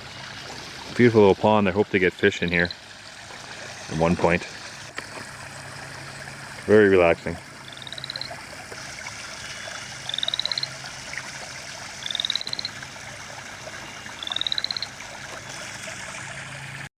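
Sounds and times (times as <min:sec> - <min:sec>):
frog calling in pulsed trills: 0:07.6 - 0:08.5, 0:09.4 - 0:11.2, 0:12.0 - 0:12.8, 0:13.7 - 0:15.1.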